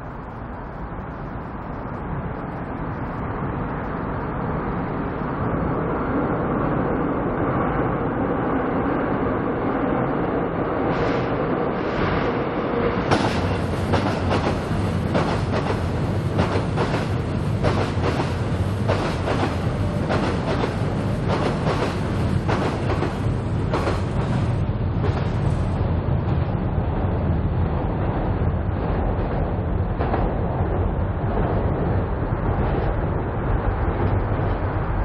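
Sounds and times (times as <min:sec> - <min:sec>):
low train rumble: 0:00.0 - 0:35.0
train wheels clacking over rail joints: 0:13.1 - 0:25.5.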